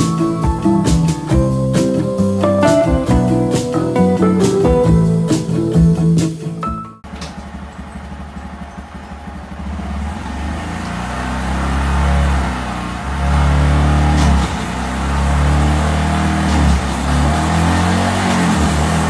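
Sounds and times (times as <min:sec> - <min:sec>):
guitar music: 0:00.0 - 0:07.0
motorcycle engine revving: 0:07.1 - 0:19.0.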